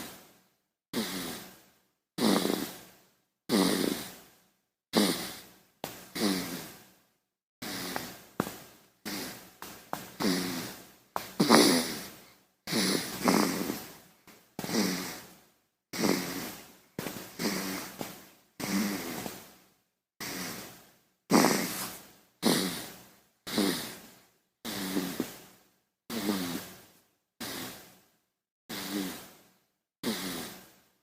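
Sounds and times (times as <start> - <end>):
baby snoring: 1.0 - 1.6, 2.2 - 2.9, 3.5 - 4.3, 4.9 - 6.8, 7.6 - 14.0, 14.6 - 19.4, 20.2 - 25.4, 26.1 - 26.8, 27.4 - 27.9, 28.7 - 29.4, 30.0 - 30.8.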